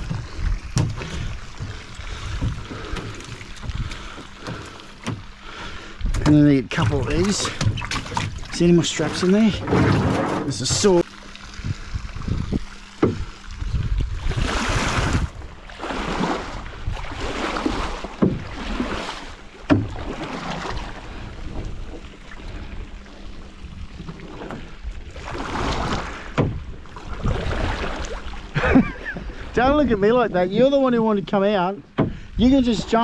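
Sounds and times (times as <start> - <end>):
water splashing against boat: 0.0 - 33.0
wind rumble on microphone: 6.0 - 23.0, 23.6 - 30.5.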